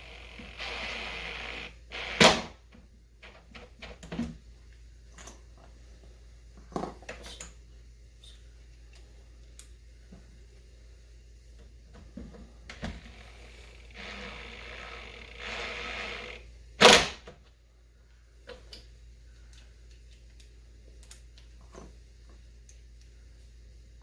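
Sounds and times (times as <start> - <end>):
drill driving screw into wood: 0.0 - 2.6, 12.9 - 17.2.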